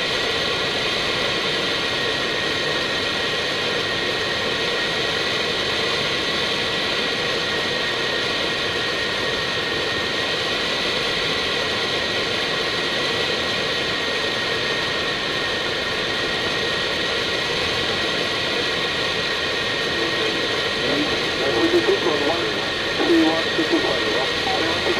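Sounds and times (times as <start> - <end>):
aircraft engines humming: 0.0 - 24.9
thin steady whine: 17.5 - 24.9.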